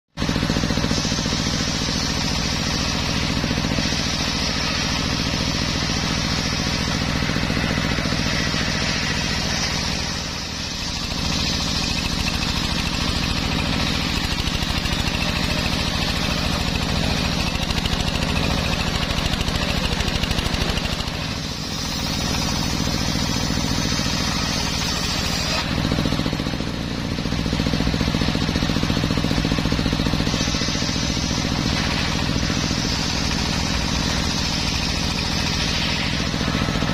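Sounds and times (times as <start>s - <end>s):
engine hum: 0.1s - 36.9s
saw blade cutting wood: 0.2s - 36.9s.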